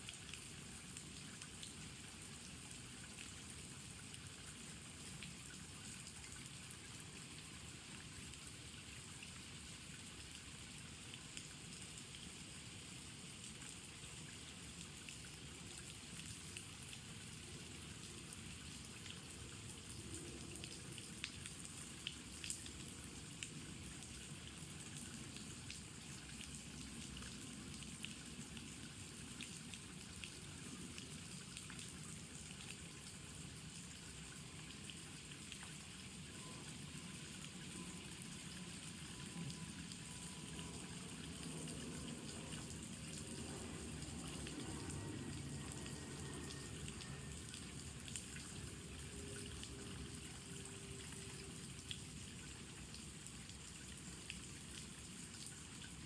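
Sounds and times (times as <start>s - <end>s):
rain falling: 18.0s - 56.0s.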